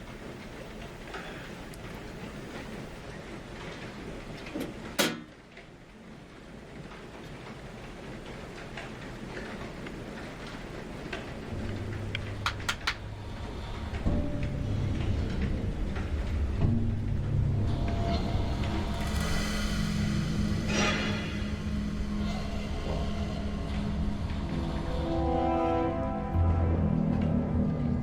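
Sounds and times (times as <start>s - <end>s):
low hum: 11.2s - 28.0s.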